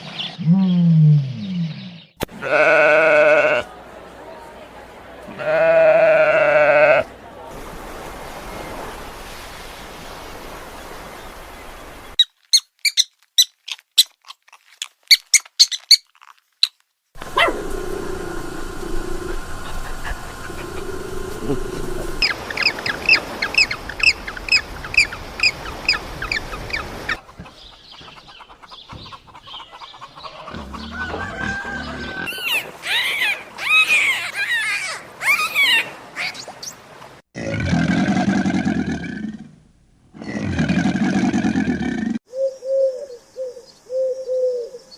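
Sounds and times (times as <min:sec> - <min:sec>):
sharp animal squeaks: 0:12.2 - 0:16.8
rising and falling animal calls: 0:17.2 - 0:27.2, 0:30.0 - 0:36.4.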